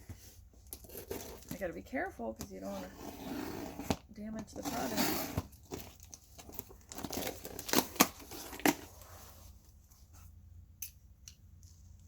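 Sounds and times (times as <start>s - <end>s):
package handling: 5.5s - 9.0s.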